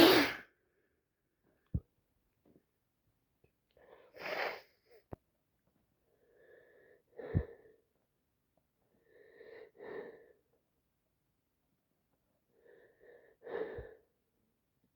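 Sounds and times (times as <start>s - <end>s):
woman sneezing: 0.0s - 0.5s
wheezy breath in: 3.9s - 5.0s.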